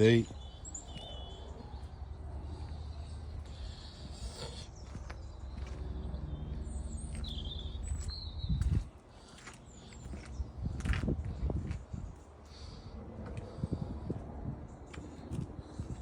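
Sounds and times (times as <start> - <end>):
bird chirps: 0.0 - 3.6, 4.3 - 8.8
low outdoor rumble: 0.0 - 16.0.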